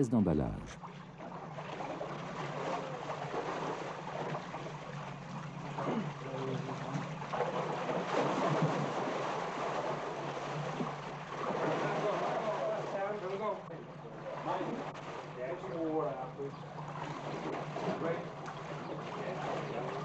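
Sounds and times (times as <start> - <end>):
steady low hum: 0.0 - 20.0
water sloshing and splashing: 0.4 - 20.0
faint voices: 17.9 - 20.0.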